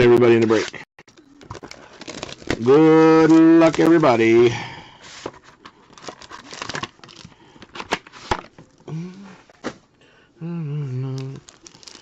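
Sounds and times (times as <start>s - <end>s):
card packs clicking and rustling: 0.3s - 8.8s, 11.2s - 12.0s.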